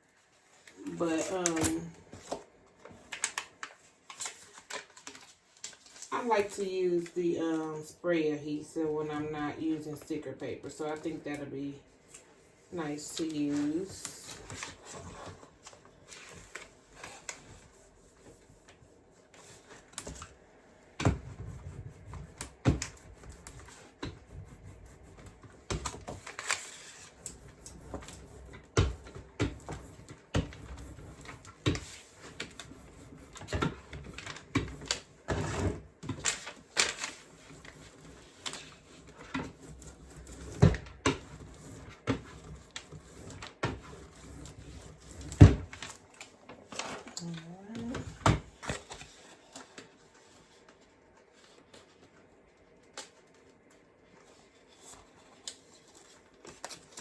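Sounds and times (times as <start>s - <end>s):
paper rustling: 0.1s - 7.2s, 12.0s - 57.0s.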